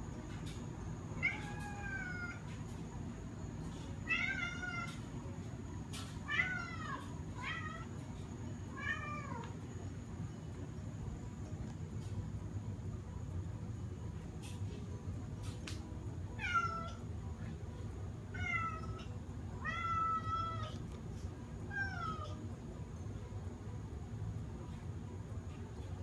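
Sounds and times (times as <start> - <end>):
low background hum: 0.0 - 26.0
cat meowing: 1.2 - 2.4, 18.4 - 20.8.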